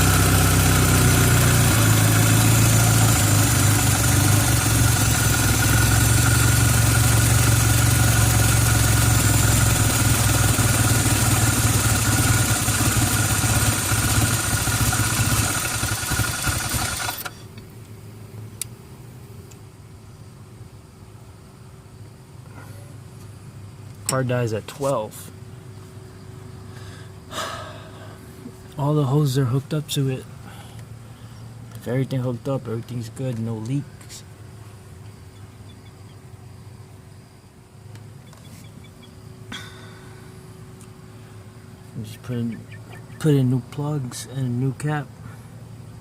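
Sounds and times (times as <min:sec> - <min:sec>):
car engine idling rough: 0:00.0 - 0:17.5.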